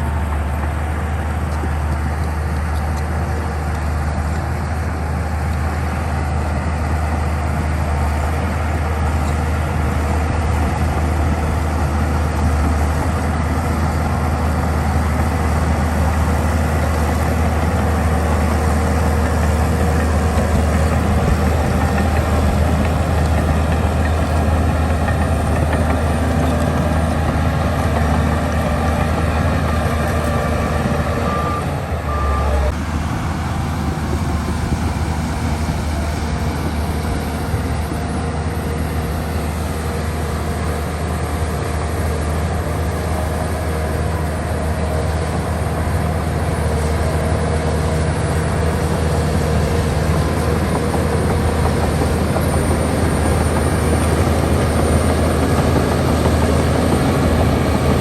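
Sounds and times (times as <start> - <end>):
diesel engine drone: 0.0 - 58.0
short beeps: 30.8 - 32.8.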